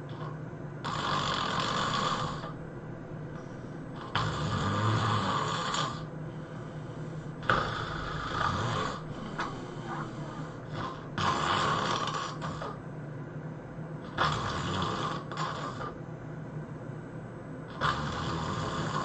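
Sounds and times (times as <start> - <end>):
person snoring loudly: 0.0 - 2.6, 4.0 - 6.1, 7.0 - 12.8, 14.0 - 16.0, 17.7 - 19.0
quiet breathing: 3.3 - 12.8.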